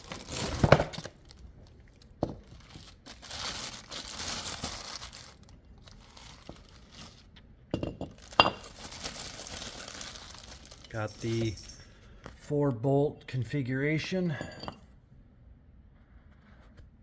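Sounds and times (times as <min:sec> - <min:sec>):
packaging crinkling and tearing: 0:00.0 - 0:07.3, 0:08.1 - 0:11.1.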